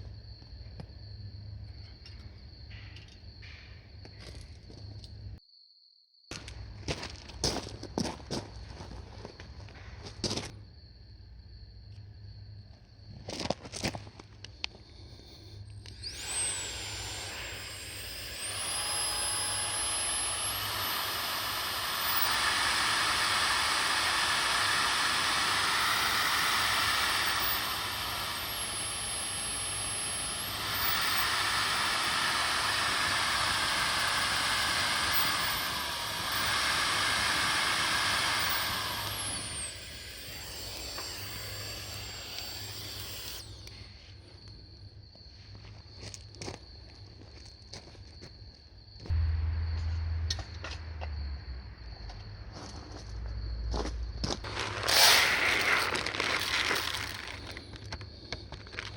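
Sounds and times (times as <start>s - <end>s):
small electric motor whining: 14.9s - 44.2s, 54.4s - 58.9s.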